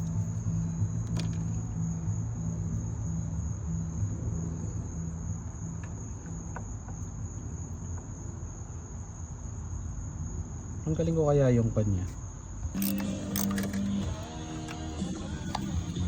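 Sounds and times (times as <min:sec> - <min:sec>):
low wavering hum: 0:00.0 - 0:06.2
cricket trill: 0:00.0 - 0:16.0.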